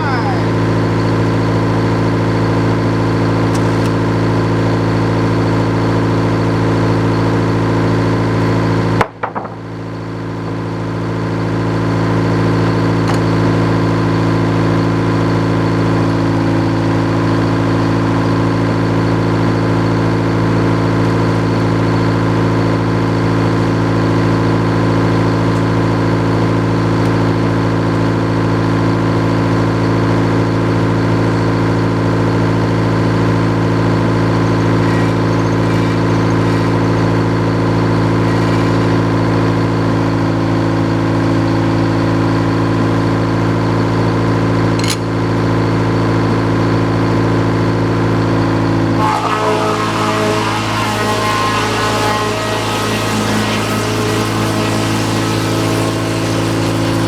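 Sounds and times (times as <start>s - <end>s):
sawmill engine running: 0.0s - 9.0s, 9.9s - 29.4s, 48.5s - 57.0s.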